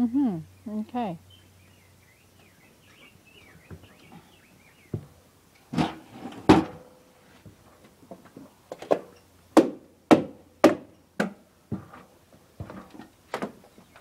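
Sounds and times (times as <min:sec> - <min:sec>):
hammer striking wood: 0:09.6 - 0:11.4.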